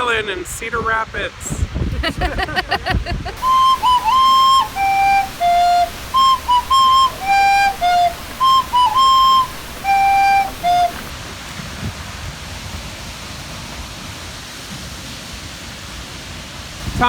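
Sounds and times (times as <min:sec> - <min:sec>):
flute-like wind instrument melody: 0:03.4 - 0:11.1.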